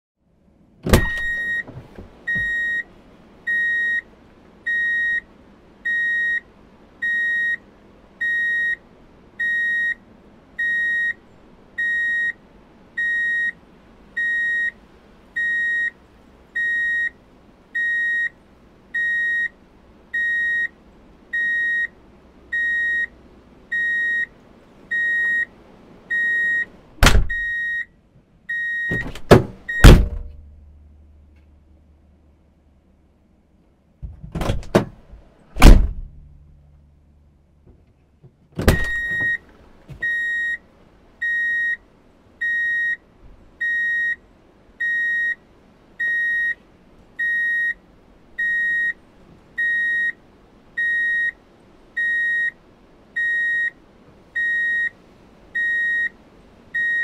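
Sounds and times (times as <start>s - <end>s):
loud clunks: 0.8s - 2.6s, 27.0s - 27.5s, 28.9s - 30.5s, 34.0s - 36.4s, 37.7s - 40.1s
reverse warning beep: 1.1s - 1.7s, 2.3s - 2.9s, 3.5s - 4.0s, 4.7s - 5.2s, 5.9s - 6.4s, 7.0s - 7.6s, 8.2s - 8.8s, 9.4s - 10.0s, 10.6s - 11.2s, 11.8s - 12.4s, 13.0s - 13.6s, 14.2s - 14.8s, 15.4s - 15.9s, 16.6s - 17.1s, 19.0s - 19.5s, 20.2s - 20.7s, 22.6s - 23.1s, 23.7s - 24.3s, 24.9s - 25.5s, 26.1s - 26.7s, 27.3s - 27.9s, 28.5s - 29.1s, 38.8s - 39.4s, 40.0s - 40.6s, 41.2s - 41.8s, 43.6s - 44.2s, 44.8s - 45.4s, 46.0s - 46.6s, 47.2s - 47.8s, 48.4s - 49.0s, 49.6s - 50.2s, 50.8s - 51.4s, 52.0s - 52.6s, 53.2s - 53.7s, 54.4s - 54.9s, 55.6s - 56.1s, 56.8s - 57.0s.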